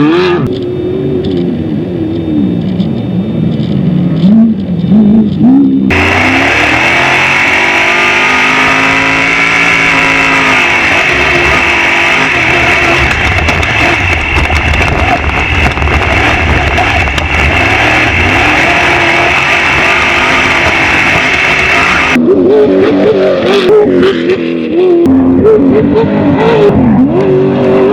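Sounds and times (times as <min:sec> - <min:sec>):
race vehicle engine revving: 0:00.0 - 0:27.9
loud rushing noise: 0:05.9 - 0:22.2.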